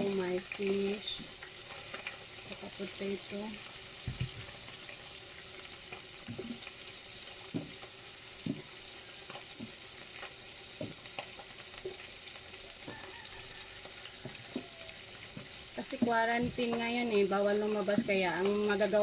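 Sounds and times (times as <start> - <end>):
fish sizzling in hot oil: 0.0 - 19.0.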